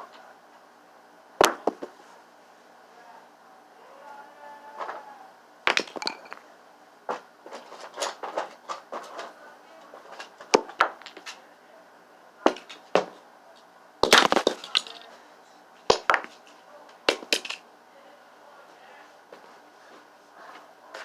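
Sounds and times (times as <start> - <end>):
hard objects knocking: 5.7 - 6.4, 17.1 - 17.6.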